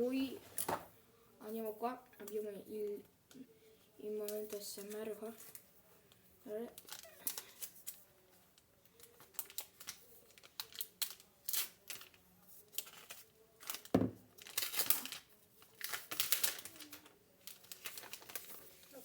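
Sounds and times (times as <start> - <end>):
packaging crinkling and tearing: 6.8 - 8.0, 9.0 - 19.0
knock: 14.0 - 14.2.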